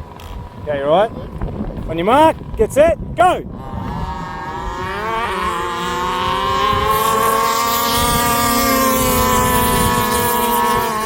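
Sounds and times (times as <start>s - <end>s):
small two-stroke engines revving: 3.4s - 11.0s.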